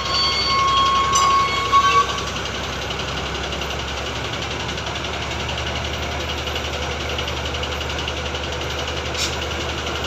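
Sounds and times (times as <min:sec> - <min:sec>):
high-pitched horn-like tone: 0:00.0 - 0:02.3
crane engine running: 0:00.0 - 0:10.0.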